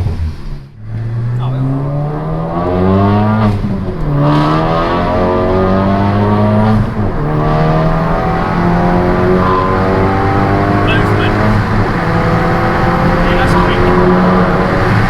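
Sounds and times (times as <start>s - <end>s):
car engine accelerating hard: 0.0s - 15.0s.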